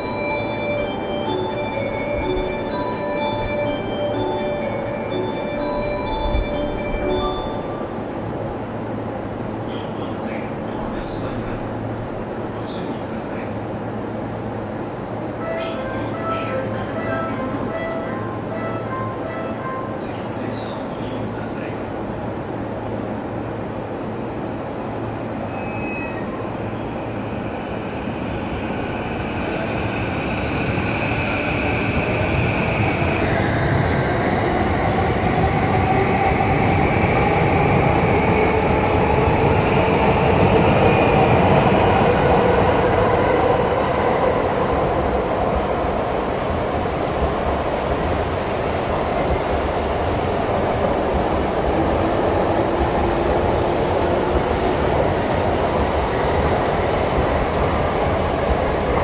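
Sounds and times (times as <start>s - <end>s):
train wheel squeal: 25.4s - 28.0s, 29.0s - 42.6s
train wheel rumble: 26.8s - 59.0s.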